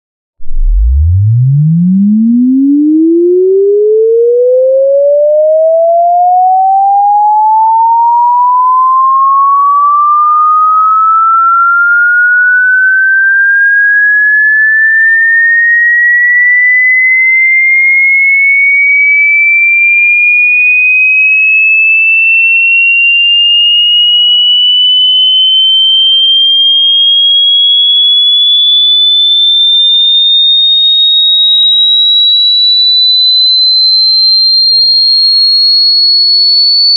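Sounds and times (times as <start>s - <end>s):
electronic tone sweeping upward: 0.4s - 19.8s, 23.1s - 28.6s.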